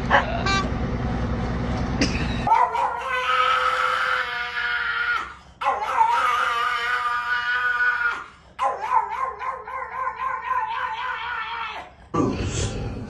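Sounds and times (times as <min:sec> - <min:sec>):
dog howling: 0:02.5 - 0:12.0.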